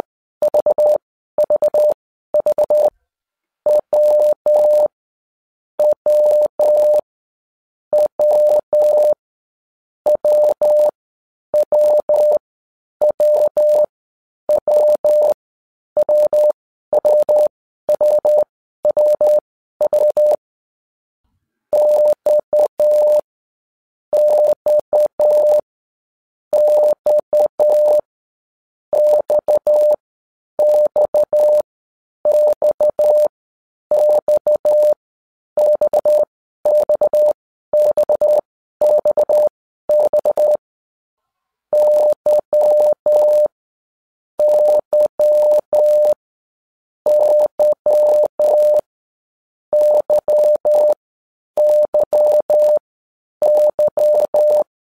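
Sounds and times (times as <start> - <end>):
morse code beeps: 0.4 - 2.9, 3.7 - 4.9, 5.8 - 7.0, 8.0 - 9.2, 10.1 - 11.0, 11.6 - 12.4, 13.0 - 13.9, 14.5 - 15.4, 16.0 - 20.4, 21.8 - 23.3, 24.2 - 25.6, 26.5 - 28.1, 29.0 - 30.0, 30.6 - 31.6, 32.3 - 33.3, 33.9 - 35.0, 35.6 - 40.6, 41.8 - 43.6, 44.4 - 46.2, 47.1 - 48.9, 49.7 - 51.0, 51.6 - 52.8, 53.4 - 54.7.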